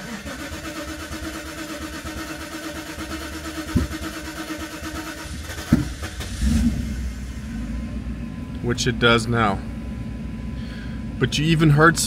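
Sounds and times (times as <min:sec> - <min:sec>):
exhaust pops: 0:00.0 - 0:07.6
car engine starting unevenly: 0:00.0 - 0:11.0.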